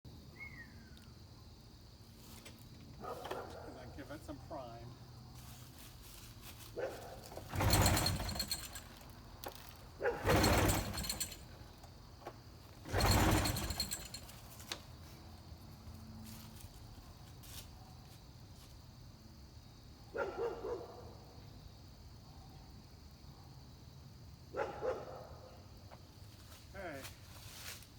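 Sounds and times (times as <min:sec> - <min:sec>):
two-stroke engine cranking: 0:07.1 - 0:14.9.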